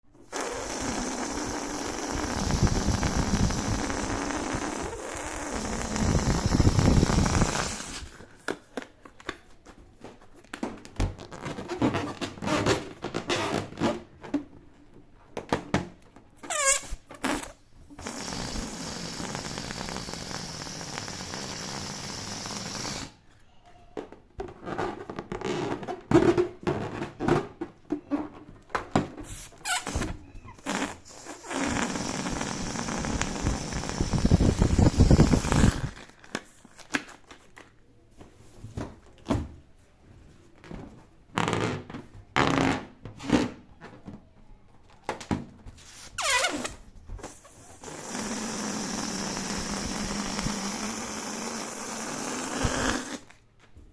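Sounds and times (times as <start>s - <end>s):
rubbing on balloon rubber: 0.0s - 8.6s, 11.0s - 14.2s, 16.4s - 23.2s, 29.1s - 37.3s, 41.3s - 43.7s, 45.7s - 53.4s
gliding balloon squeal: 0.2s - 8.3s, 16.4s - 23.2s, 29.2s - 36.2s, 45.8s - 53.4s
balloons popping: 0.2s - 8.9s, 15.4s - 23.2s, 28.9s - 37.4s, 41.3s - 43.6s, 45.1s - 53.4s.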